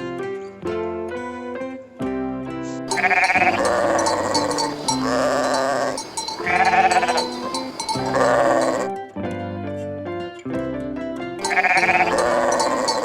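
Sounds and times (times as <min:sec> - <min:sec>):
sheep bleating: 0:02.9 - 0:08.9, 0:11.4 - 0:13.0
acoustic guitar music: 0:02.9 - 0:09.2, 0:11.4 - 0:13.0.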